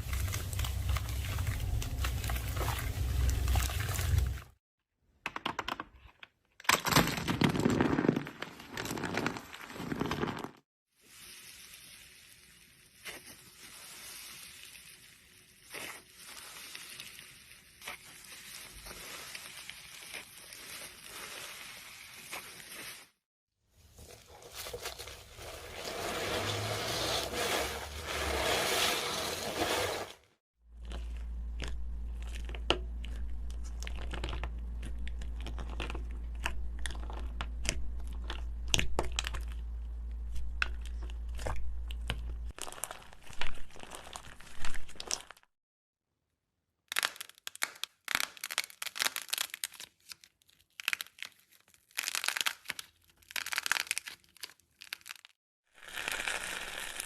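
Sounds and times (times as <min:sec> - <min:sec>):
material crunching and scraping: 0:00.0 - 0:04.6, 0:07.6 - 0:10.6, 0:23.8 - 0:39.5
small crackles: 0:46.9 - 0:57.0.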